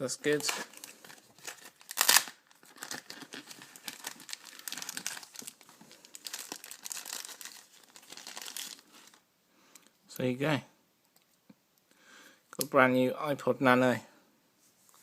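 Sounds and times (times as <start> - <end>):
packaging crinkling: 0.3 - 9.2.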